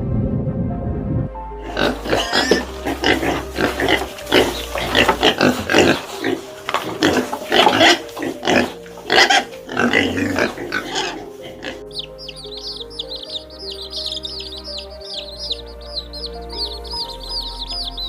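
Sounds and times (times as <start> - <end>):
background music with held notes: 0.0 - 18.0
pig grunting and squealing: 1.6 - 13.4
chicks peeping: 1.7 - 18.0.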